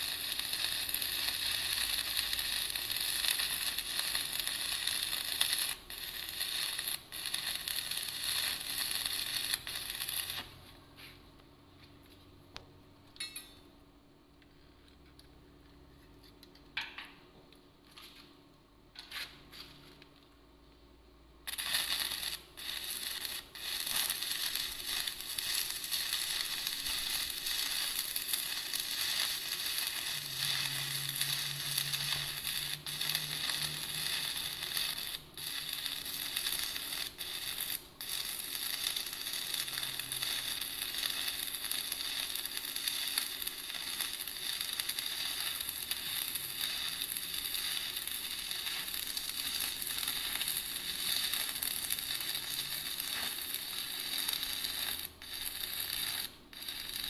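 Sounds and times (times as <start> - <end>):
welding arc crackling sizzle: 0.0 - 11.2, 21.4 - 57.0.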